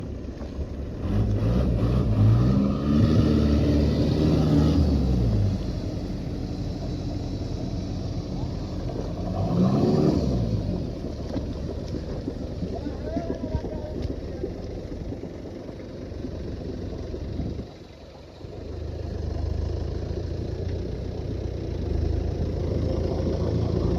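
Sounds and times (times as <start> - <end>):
vehicle engine revving: 0.9 - 12.8.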